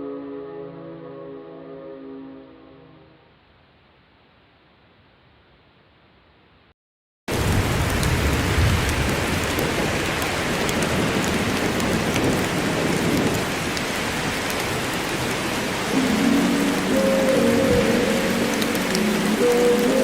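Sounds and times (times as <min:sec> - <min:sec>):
low rumble of thunder: 0:07.3 - 0:13.9
heavy rain: 0:07.3 - 0:20.0.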